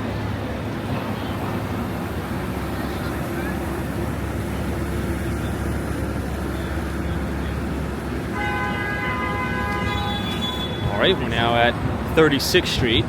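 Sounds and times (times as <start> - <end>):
city traffic rumble: 0.0 - 13.0
car horn blast: 8.3 - 11.0.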